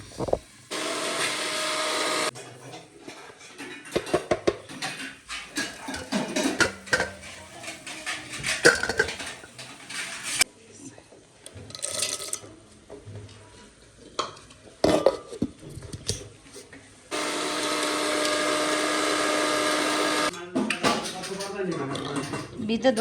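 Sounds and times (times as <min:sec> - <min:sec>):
utensils and dishes clattering: 0:00.0 - 0:10.5, 0:11.6 - 0:23.0
electric mixer grinder whirring: 0:00.1 - 0:02.3, 0:17.1 - 0:20.3.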